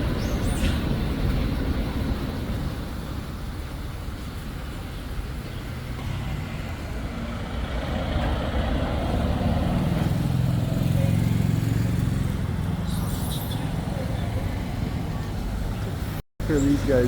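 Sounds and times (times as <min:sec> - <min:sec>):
vehicle engine running: 0:05.2 - 0:16.2.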